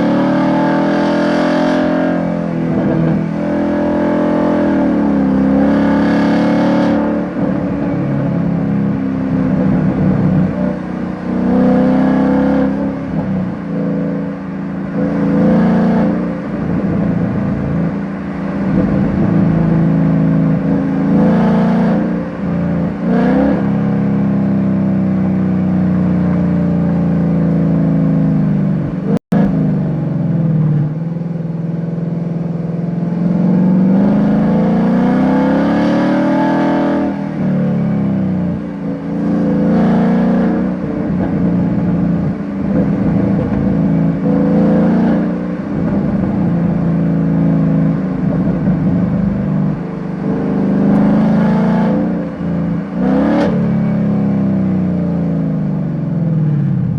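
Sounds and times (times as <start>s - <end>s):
car engine revving: 0.0s - 56.9s
exhaust pops and crackles: 41.2s - 43.9s.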